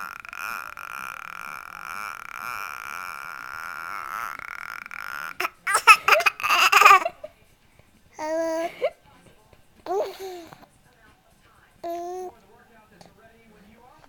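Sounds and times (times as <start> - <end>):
baby squealing: 0.0 - 7.1
baby vocalizing: 0.0 - 7.2, 8.2 - 8.9, 9.9 - 10.6, 11.8 - 12.3.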